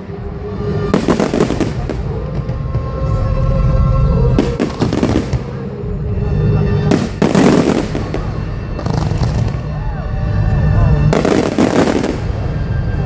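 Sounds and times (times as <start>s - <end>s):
fireworks bursting with bangs: 0.0s - 3.4s, 4.3s - 6.0s, 6.8s - 9.8s, 11.0s - 12.9s
music with held notes: 0.0s - 13.0s.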